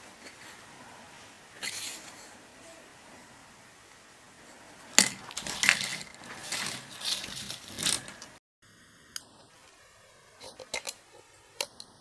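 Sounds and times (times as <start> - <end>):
crinkling and crushing: 4.9 - 8.4.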